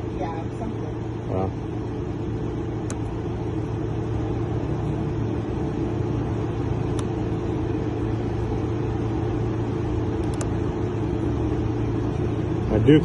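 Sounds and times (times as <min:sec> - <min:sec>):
vehicle engine idling: 0:00.0 - 0:13.0
faint click: 0:02.8 - 0:03.1, 0:10.2 - 0:10.5.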